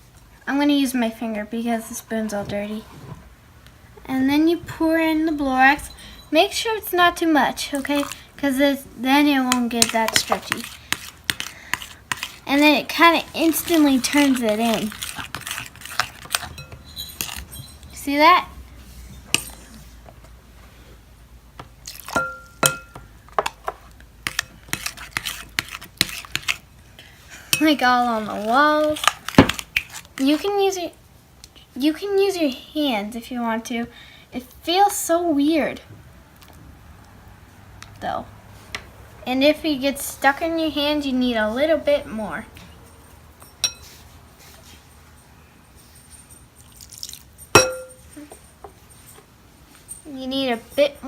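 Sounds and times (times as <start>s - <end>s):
spoon scraping a container: 7.6s - 8.3s, 9.5s - 18.0s, 23.4s - 26.7s, 27.5s - 30.5s
sharp ringing clink: 22.2s - 23.0s, 47.4s - 48.2s.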